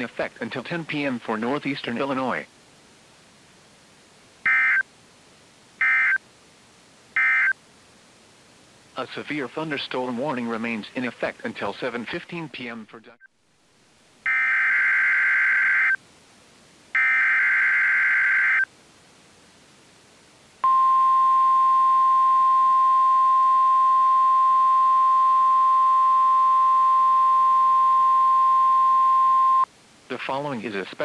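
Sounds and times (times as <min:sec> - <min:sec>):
steady warning alarm tone: 0:04.5 - 0:04.8, 0:14.3 - 0:16.0, 0:17.0 - 0:18.6.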